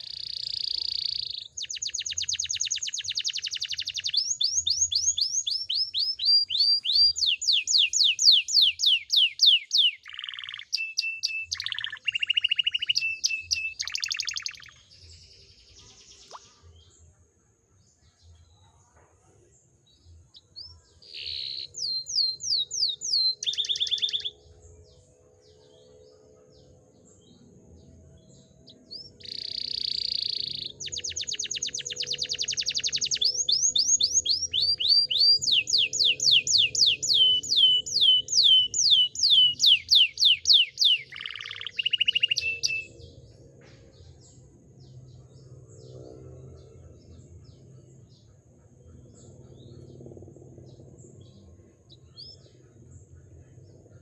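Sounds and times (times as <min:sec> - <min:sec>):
canary singing rapid trills: 0:00.0 - 0:15.0, 0:21.0 - 0:24.4, 0:28.5 - 0:43.0.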